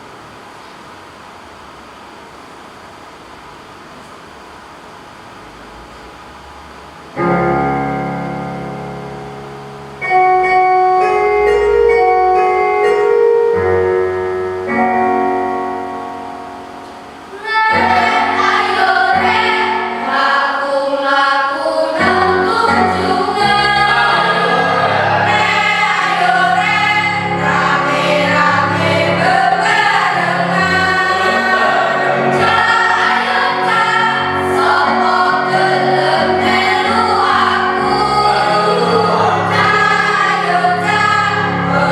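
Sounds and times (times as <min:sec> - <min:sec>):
sustained instrumental chords: 0:07.2 - 0:20.8, 0:21.9 - 0:41.9
choir singing in harmony: 0:17.4 - 0:41.9.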